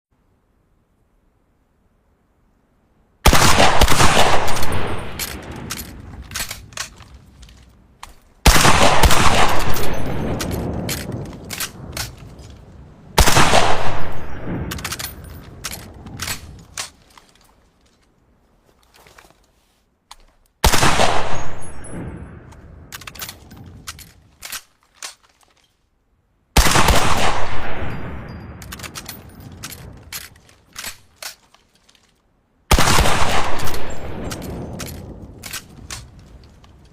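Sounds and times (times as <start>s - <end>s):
shotgun blasts with echo: 3.2s - 6.7s, 8.4s - 12.2s, 13.2s - 15.3s, 20.6s - 22.5s, 26.6s - 28.2s, 32.7s - 35.6s.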